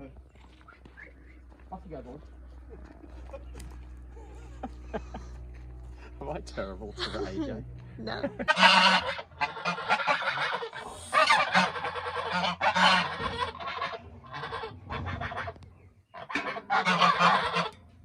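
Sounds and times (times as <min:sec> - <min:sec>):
geese honking: 0:08.4 - 0:17.8.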